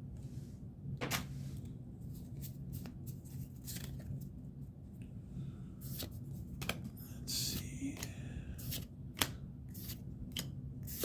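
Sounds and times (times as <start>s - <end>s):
low steady hum: 0.0s - 11.0s
trading cards rustling: 2.2s - 4.3s.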